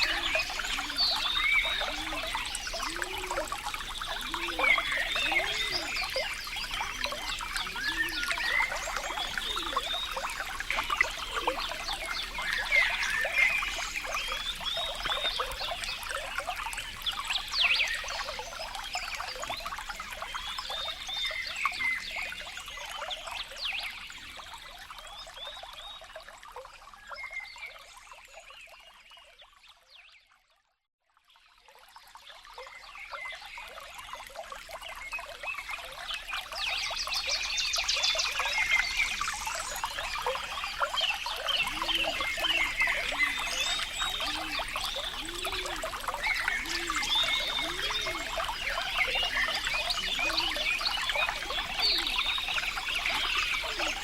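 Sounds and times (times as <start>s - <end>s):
low croaking calls: 0.0s - 16.4s, 37.3s - 54.0s
water trickling and pouring: 0.0s - 54.0s.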